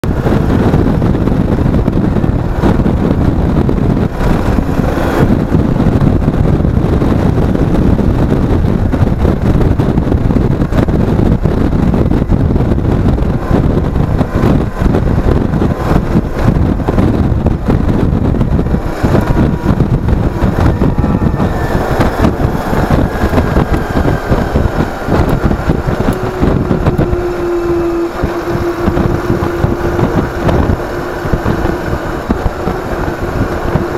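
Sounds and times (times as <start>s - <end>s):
motorcycle engine: 0.0s - 33.9s
wind buffeting microphone: 0.0s - 33.9s.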